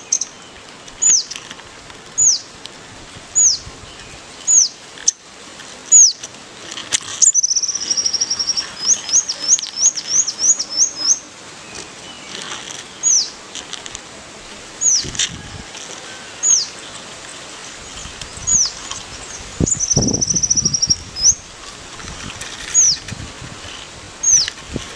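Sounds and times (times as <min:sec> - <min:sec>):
small songbird singing: 0:00.0 - 0:01.4, 0:02.2 - 0:02.5, 0:03.3 - 0:05.2, 0:05.9 - 0:06.3, 0:07.2 - 0:13.4, 0:14.8 - 0:15.2, 0:16.4 - 0:16.9, 0:17.6 - 0:21.5, 0:24.2 - 0:24.5.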